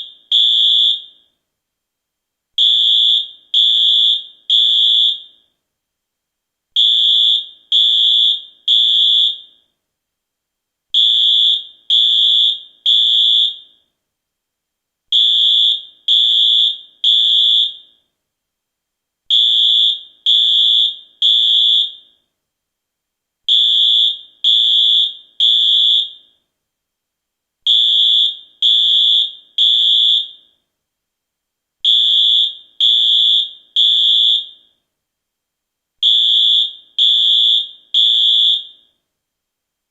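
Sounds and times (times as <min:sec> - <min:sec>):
fire alarm high-pitched beeps: 0:00.0 - 0:01.4, 0:02.6 - 0:05.5, 0:06.8 - 0:09.7, 0:11.0 - 0:13.9, 0:15.1 - 0:18.1, 0:19.3 - 0:22.3, 0:23.5 - 0:26.4, 0:27.7 - 0:30.6, 0:31.9 - 0:34.8, 0:36.0 - 0:39.0.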